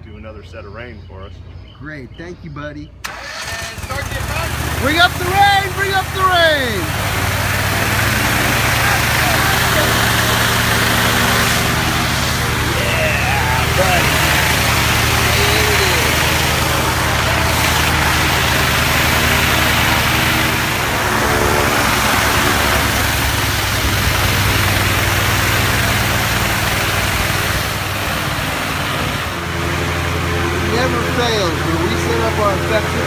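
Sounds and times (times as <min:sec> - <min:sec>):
gas engine running: 0:03.0 - 0:33.0
artificial rain spraying: 0:04.3 - 0:29.4.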